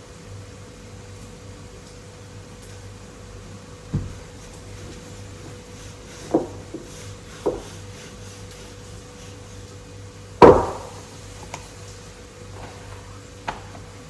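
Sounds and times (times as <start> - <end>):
knocks: 3.9 - 4.3, 6.3 - 7.7, 10.4 - 11.0
loud thump: 10.4 - 11.0.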